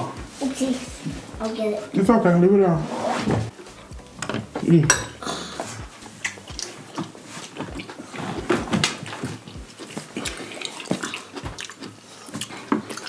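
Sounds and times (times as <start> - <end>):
person chewing with wet smacks: 3.5 - 13.0.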